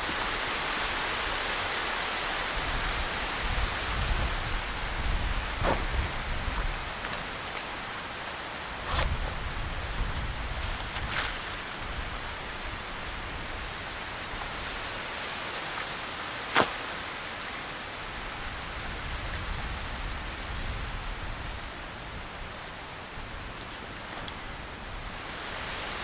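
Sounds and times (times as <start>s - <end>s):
wind rushing: 2.5s - 7.0s.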